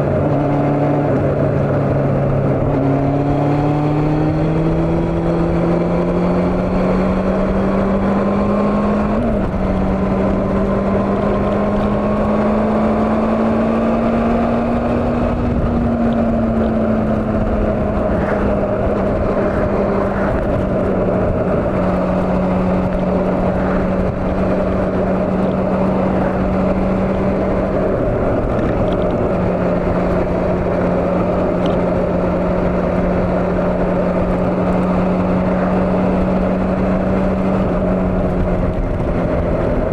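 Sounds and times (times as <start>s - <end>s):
motorcycle engine cruising: 0.0s - 39.9s
wind rushing: 13.3s - 39.9s.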